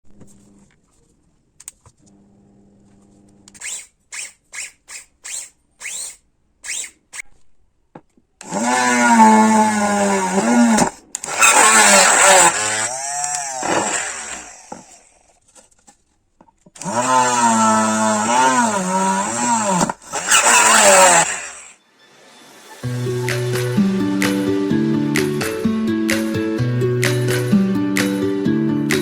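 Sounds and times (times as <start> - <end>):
drill motor whirring: 3.5 - 7.3, 8.4 - 15.3, 16.8 - 21.8.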